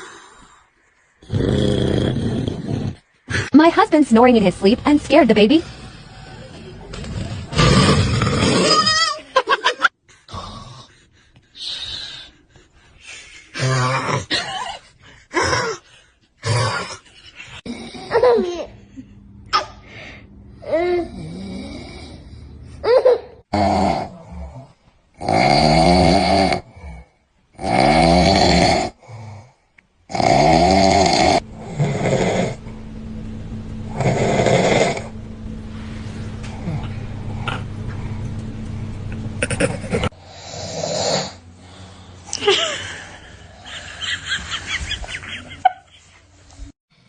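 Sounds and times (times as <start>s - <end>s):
man snoring: 1.2s - 3.1s, 5.6s - 8.8s, 20.7s - 22.5s, 23.5s - 32.6s, 33.9s - 35.2s, 39.4s - 41.4s
pitch-bending vocal sounds: 39.0s - 40.5s.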